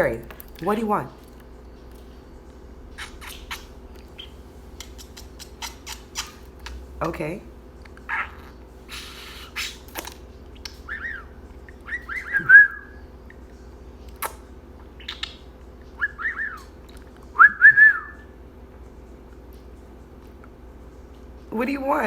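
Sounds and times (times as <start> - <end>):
budgie whistling: 2.8 - 6.9, 8.1 - 13.4, 14.2 - 18.4.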